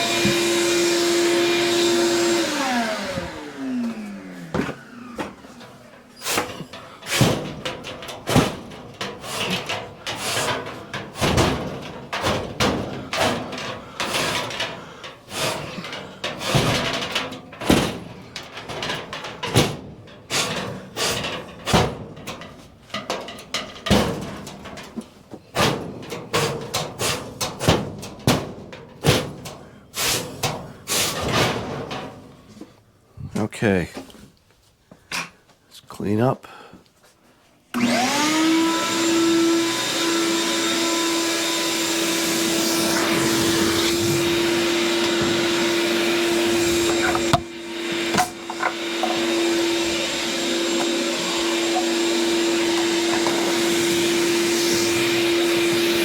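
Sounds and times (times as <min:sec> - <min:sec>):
brush scraping in metal stovepipe: 0:06.1 - 0:19.5, 0:42.7 - 0:56.0
sharp metallic knocks: 0:43.1 - 0:56.0.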